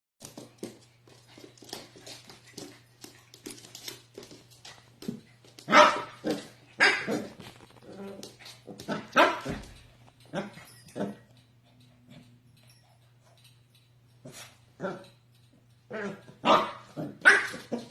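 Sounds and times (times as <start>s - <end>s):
dog barking: 5.7s - 7.3s, 16.0s - 17.9s.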